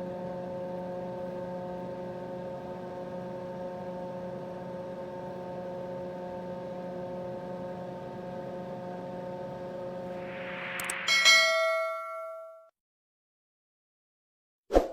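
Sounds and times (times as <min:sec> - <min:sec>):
computer hum: 0:10.0 - 0:11.3
short rising hiss: 0:10.1 - 0:11.3
sharp click: 0:10.6 - 0:11.2.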